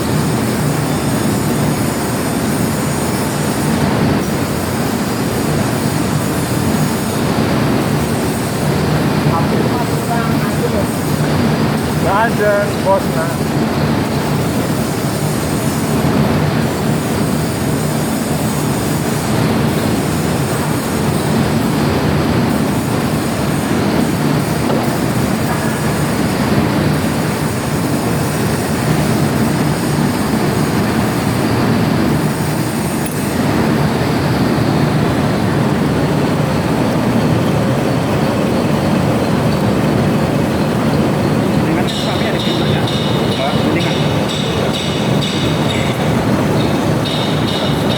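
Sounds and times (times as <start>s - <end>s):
metal lathe machining pipe: 0.0s - 47.9s.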